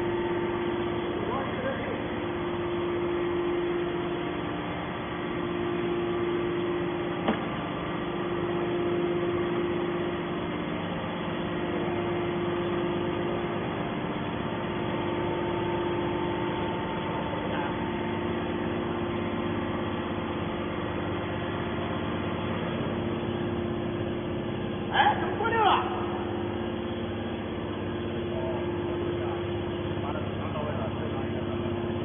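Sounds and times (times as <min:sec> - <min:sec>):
hydraulic baler humming: 0:00.0 - 0:32.0
sharp knock: 0:07.2 - 0:07.5.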